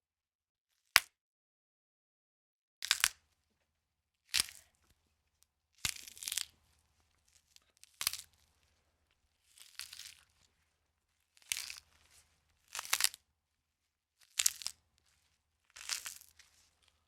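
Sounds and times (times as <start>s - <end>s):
sharp crunching bone cracks: 2.8s - 3.2s, 7.9s - 8.2s, 12.7s - 13.2s.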